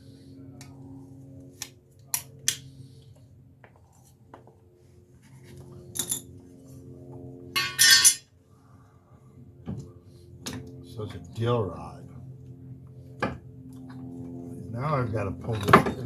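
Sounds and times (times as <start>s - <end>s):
clattering rattle of metal: 7.6s - 8.2s
metallic clinks of hand tools: 7.6s - 8.2s.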